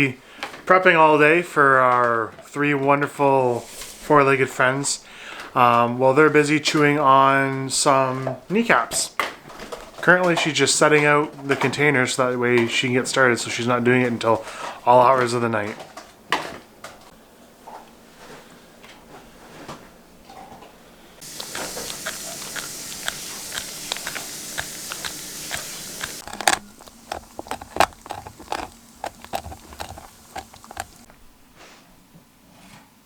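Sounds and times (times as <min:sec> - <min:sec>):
steady hiss: 0:21.2 - 0:31.1
dog gnawing on a bone: 0:21.2 - 0:31.2.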